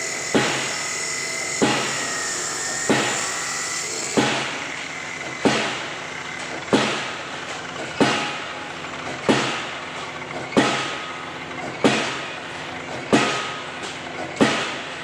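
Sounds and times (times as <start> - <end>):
steady machine hum: 0.0 - 15.0
pile-driving hammer striking: 4.0 - 4.6, 5.2 - 9.8, 10.4 - 12.3, 12.9 - 14.9.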